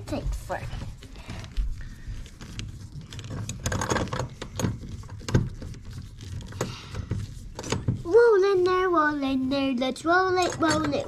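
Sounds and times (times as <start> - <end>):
metal hardware and tools rattling: 2.5 - 8.0, 10.3 - 11.0.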